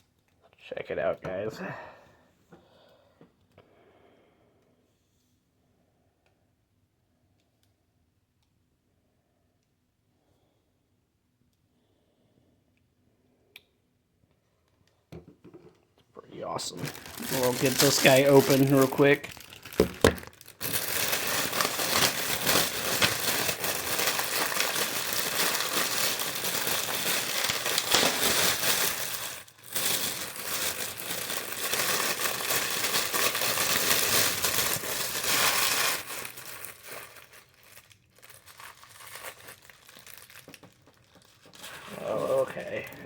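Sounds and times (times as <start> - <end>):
plastic packaging crinkling: 16.4 - 43.0.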